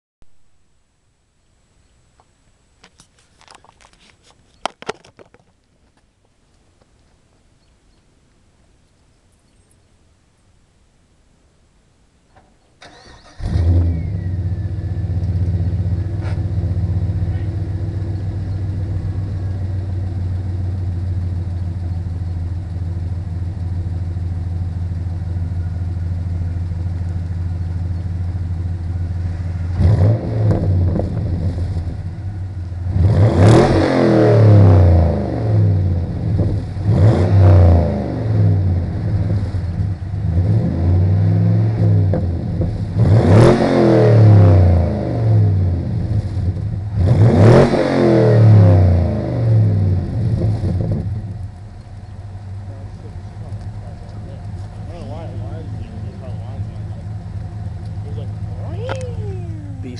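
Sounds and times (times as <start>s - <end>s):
car engine idling and revving: 12.8s - 59.9s.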